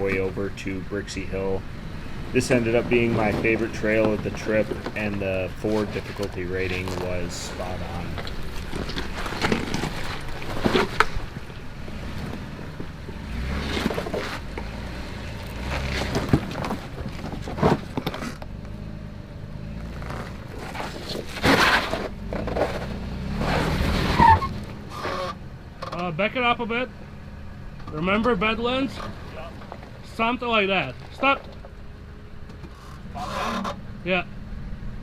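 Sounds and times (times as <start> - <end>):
low engine rumble: 0.0 - 35.0
tyres knocking and scraping on rocks: 2.4 - 18.8, 19.8 - 26.1, 27.8 - 31.8.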